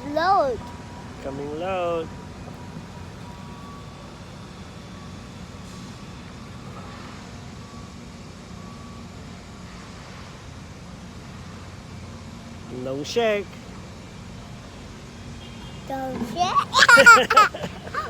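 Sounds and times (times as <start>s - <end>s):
faint reversing alarm beeps: 0.6s - 10.1s.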